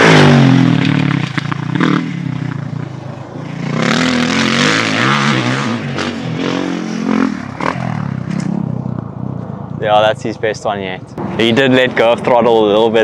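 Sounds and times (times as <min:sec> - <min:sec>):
dirt bike engine revving: 0:00.0 - 0:09.2.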